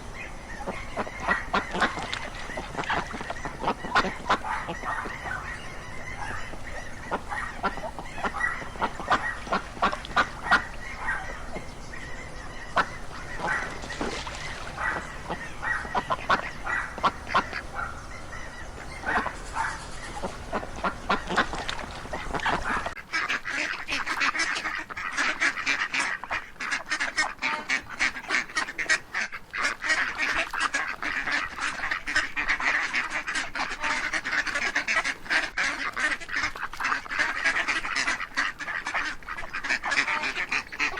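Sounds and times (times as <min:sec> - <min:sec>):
low background rumble: 0:00.0 - 0:23.0
waterfowl calling: 0:00.0 - 0:40.9.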